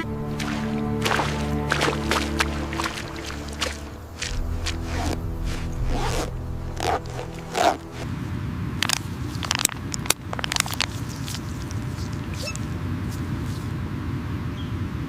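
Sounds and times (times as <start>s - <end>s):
background music: 0.0s - 8.1s
low rumble: 0.0s - 9.0s
scraping and crackling clicks: 8.8s - 12.6s.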